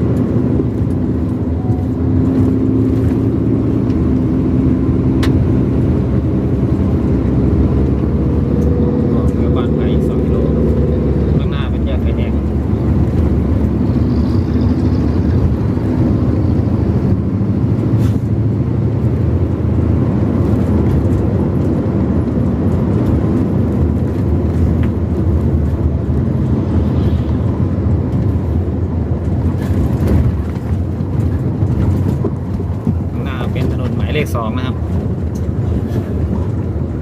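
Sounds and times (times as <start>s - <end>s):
vehicle engine and tyre rumble: 0.0s - 37.0s.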